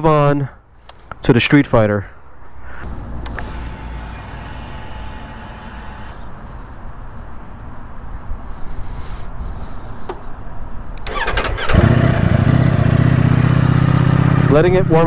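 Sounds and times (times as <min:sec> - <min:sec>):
motorcycle engine idling: 0:11.1 - 0:15.0.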